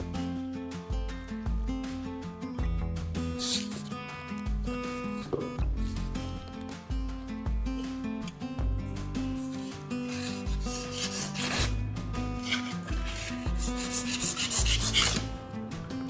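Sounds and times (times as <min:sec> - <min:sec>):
background music with bass line: 0:00.0 - 0:16.0
knife scraping on sharpener: 0:03.4 - 0:03.9, 0:09.4 - 0:11.8, 0:12.4 - 0:15.4.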